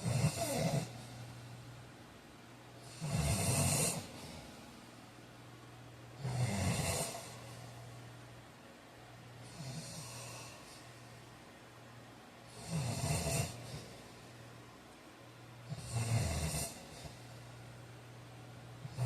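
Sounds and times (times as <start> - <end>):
man snoring: 0.0 - 1.0, 2.8 - 4.4, 6.2 - 7.6, 9.4 - 10.8, 12.5 - 13.9, 15.7 - 17.2
soft breath: 3.8 - 5.0, 9.4 - 11.4.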